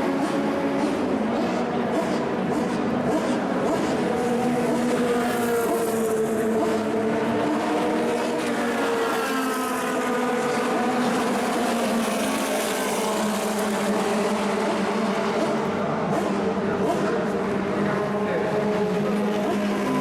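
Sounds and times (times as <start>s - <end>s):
racing car engines: 0.0s - 20.0s.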